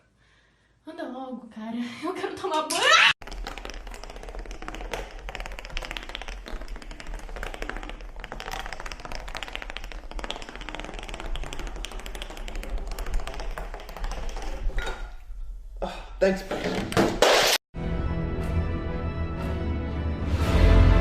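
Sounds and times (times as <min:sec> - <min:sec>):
rapid clicking and tapping: 0:03.2 - 0:14.8.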